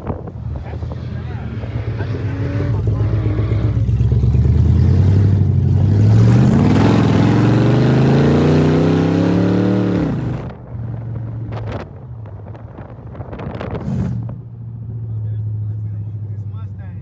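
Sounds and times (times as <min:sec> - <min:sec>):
car engine revving: 0:00.0 - 0:10.6.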